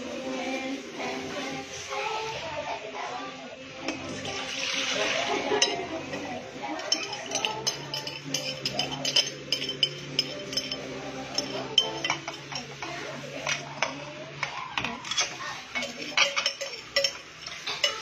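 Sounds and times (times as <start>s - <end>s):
metal spoon clinking in container: 5.6s - 18.0s.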